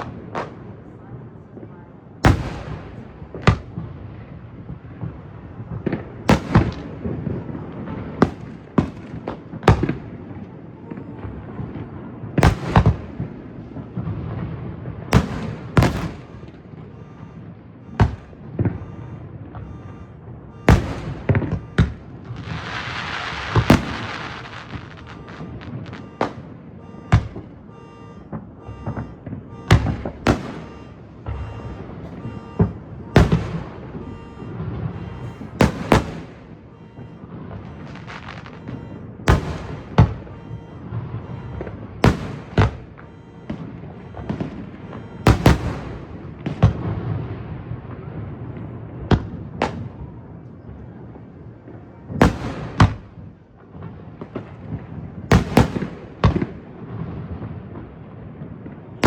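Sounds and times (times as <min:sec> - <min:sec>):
fireworks booming: 0:00.0 - 0:59.0
fireworks crackling hiss: 0:22.3 - 0:26.3.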